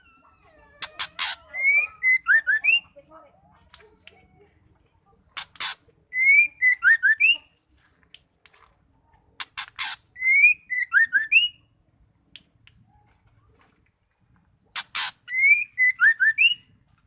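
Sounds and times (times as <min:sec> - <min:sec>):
bird harsh rasping notes: 0:00.8 - 0:02.8, 0:05.4 - 0:07.4, 0:09.4 - 0:11.5, 0:14.8 - 0:16.7
bird clear whistled notes: 0:06.1 - 0:07.5, 0:10.2 - 0:11.6, 0:15.3 - 0:16.7.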